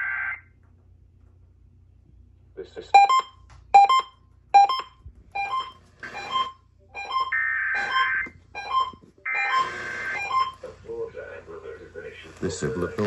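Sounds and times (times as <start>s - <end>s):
harsh buzzing data bursts: 9.3s - 10.6s.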